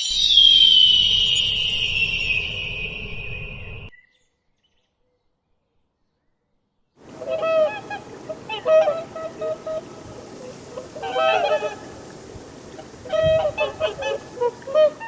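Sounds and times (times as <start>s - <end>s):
birds calling: 7.0s - 15.0s
steady background hiss: 7.0s - 15.0s.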